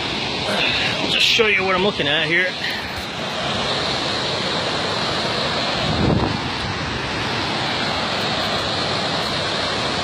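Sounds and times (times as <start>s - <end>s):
wind buffeting microphone: 5.5s - 8.8s.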